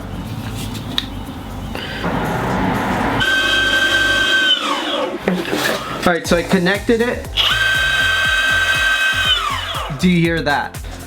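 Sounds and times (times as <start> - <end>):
electric skateboard motor tone: 2.0 - 10.1.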